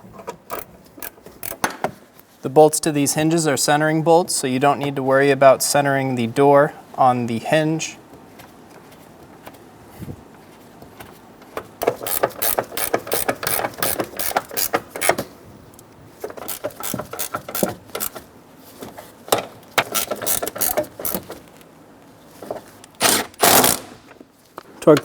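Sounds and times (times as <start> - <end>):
ratchet wrench clicking: 0.5 - 1.7, 11.8 - 15.2, 16.4 - 18.2, 19.8 - 21.3, 22.9 - 24.0.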